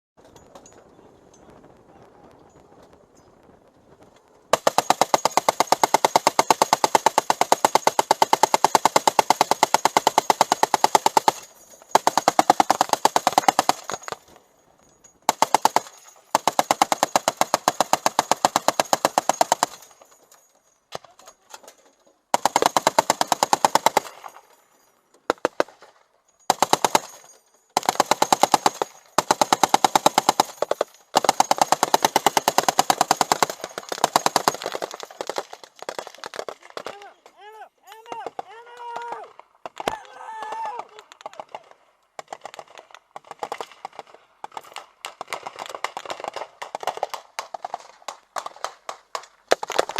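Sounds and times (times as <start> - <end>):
machine gun firing bursts: 4.5 - 14.2, 15.3 - 20.0, 22.3 - 24.4, 26.5 - 37.0, 41.4 - 49.9.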